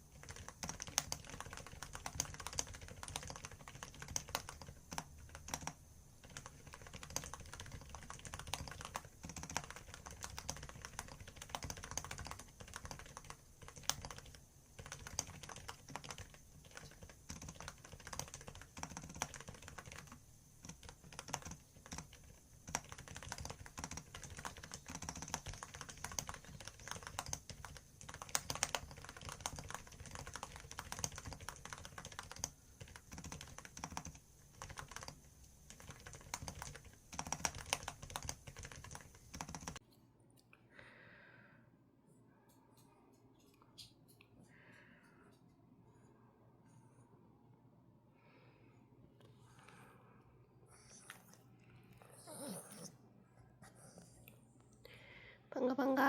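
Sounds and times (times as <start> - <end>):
fast typing on keyboard: 0.0 - 39.8.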